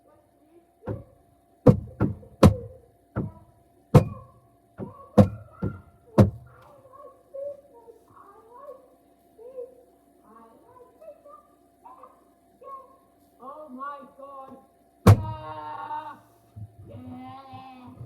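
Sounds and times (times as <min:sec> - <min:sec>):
faint muffled outside sounds: 0:00.0 - 0:18.0
muffled thuds and knocks: 0:00.9 - 0:06.6, 0:15.1 - 0:15.4, 0:16.6 - 0:18.0
fridge hum: 0:00.9 - 0:07.1, 0:15.0 - 0:18.0.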